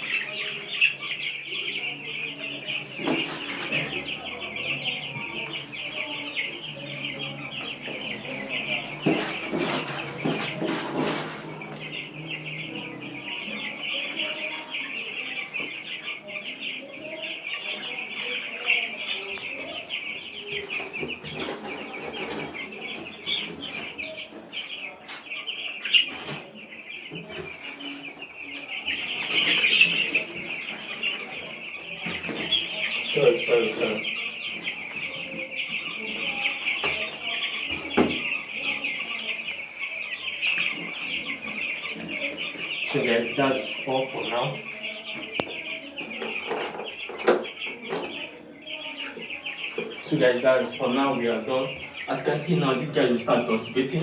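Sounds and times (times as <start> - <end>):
chicks peeping: 0.0 - 54.0.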